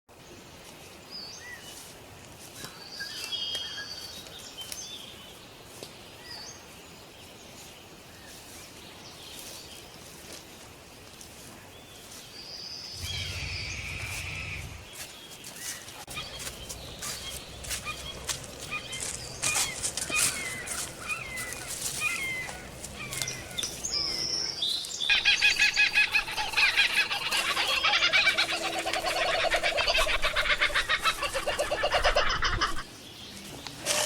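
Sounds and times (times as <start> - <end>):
outdoor background noise: 0.1 - 34.0
birds calling and chirping: 12.1 - 34.0
loud low drone: 13.0 - 14.9.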